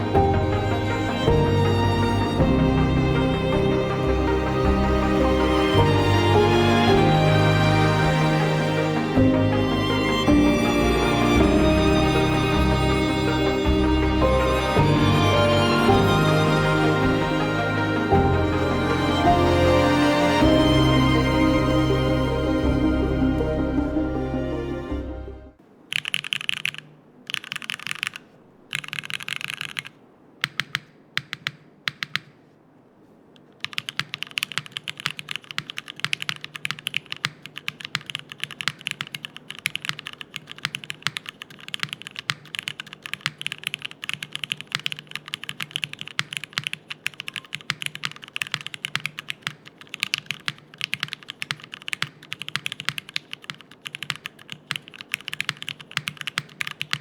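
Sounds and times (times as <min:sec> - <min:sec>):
mechanical keyboard typing: 0:25.9 - 0:32.4, 0:33.4 - 0:57.0.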